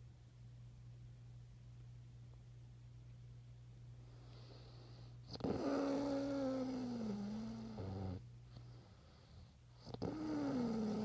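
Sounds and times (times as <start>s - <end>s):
person snoring: 5.4s - 8.2s, 9.8s - 11.0s.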